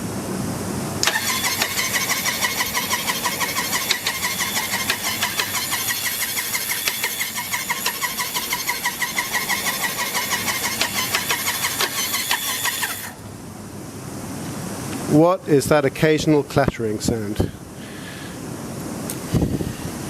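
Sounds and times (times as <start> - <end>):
engine cranking on starter: 1.0 - 13.2.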